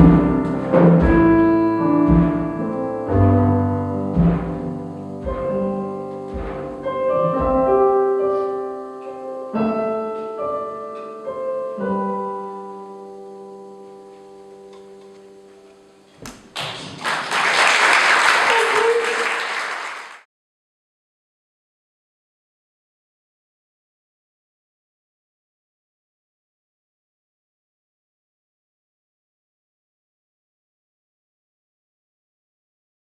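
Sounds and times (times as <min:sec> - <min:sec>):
folk instrumental with piano notes: 0:00.0 - 0:15.8
audience applause: 0:16.4 - 0:20.3.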